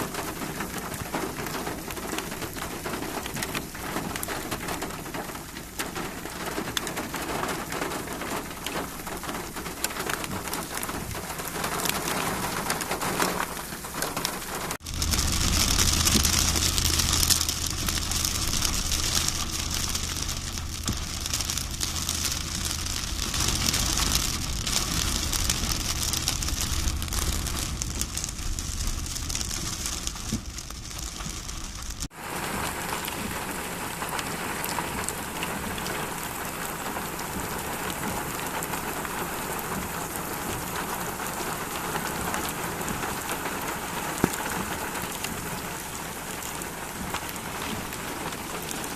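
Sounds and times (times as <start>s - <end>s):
rain falling: 0.0s - 48.9s
low steady hum: 14.8s - 32.1s.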